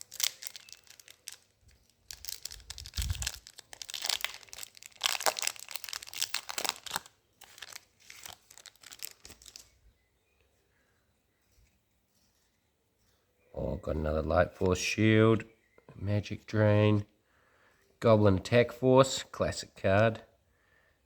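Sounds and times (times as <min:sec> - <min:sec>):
foil wrapper crinkling and tearing: 0:00.0 - 0:09.7.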